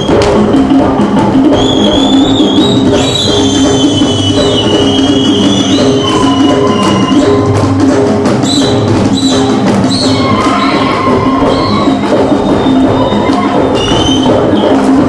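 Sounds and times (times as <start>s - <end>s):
upbeat show music: 0.0s - 15.0s
sliding whistling line: 1.5s - 7.5s, 8.4s - 10.8s, 11.4s - 14.8s.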